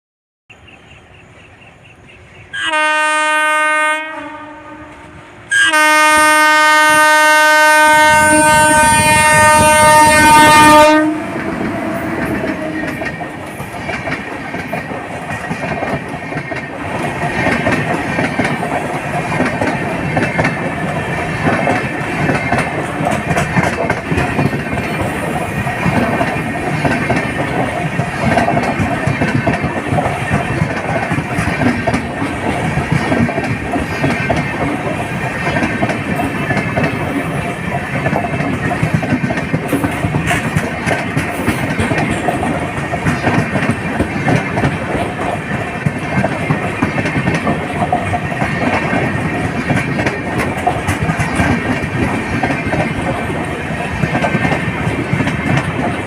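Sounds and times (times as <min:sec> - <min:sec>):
train rumbling on rails: 0:00.5 - 0:56.0
locomotive horn blasts: 0:02.5 - 0:12.8.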